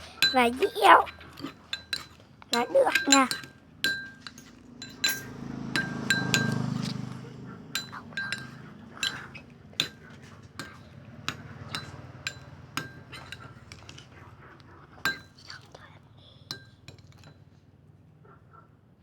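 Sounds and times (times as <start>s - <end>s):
stirrer clinking on container: 0.0s - 14.2s, 15.0s - 15.6s.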